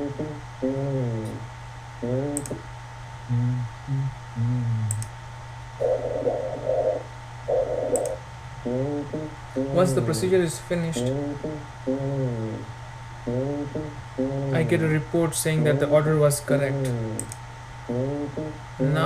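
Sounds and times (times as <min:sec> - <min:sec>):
recorded lung sounds: 0:00.0 - 0:02.6, 0:03.2 - 0:05.1, 0:05.8 - 0:14.8, 0:16.7 - 0:19.0
mouse clicks: 0:08.0 - 0:08.2.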